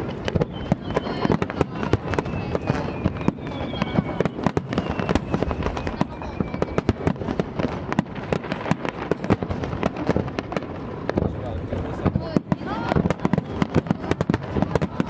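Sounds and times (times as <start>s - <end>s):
fireworks bangs and crackles: 0.0s - 15.0s
fireworks whistling: 0.0s - 15.0s.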